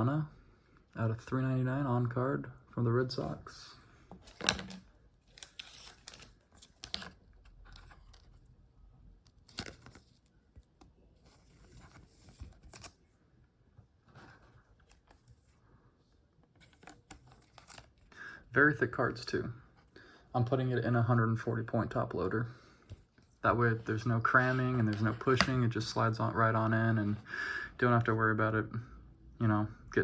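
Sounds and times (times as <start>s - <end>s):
card scraping in plastic sleeve: 4.2s - 8.3s, 16.6s - 18.0s, 23.8s - 26.0s.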